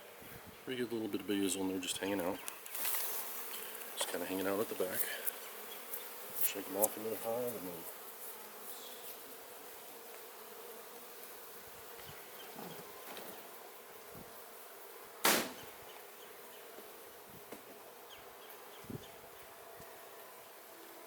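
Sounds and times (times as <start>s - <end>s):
bees buzzing: 0.0s - 21.0s
sharp knock: 15.2s - 15.8s.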